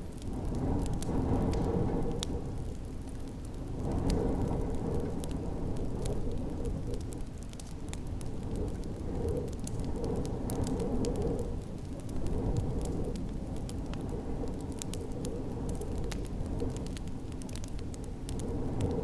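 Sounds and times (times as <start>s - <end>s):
storm wind rushing: 0.0s - 19.0s
wood fire crackling and popping: 0.0s - 19.0s.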